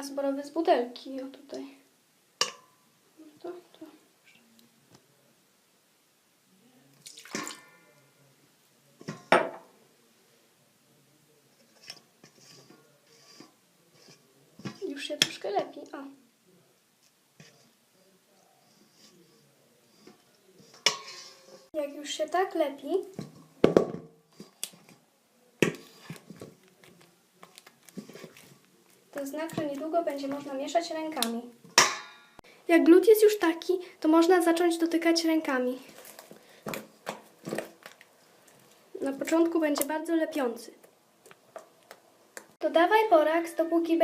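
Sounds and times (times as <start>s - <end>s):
sticky slime squelches: 25.7s - 31.4s.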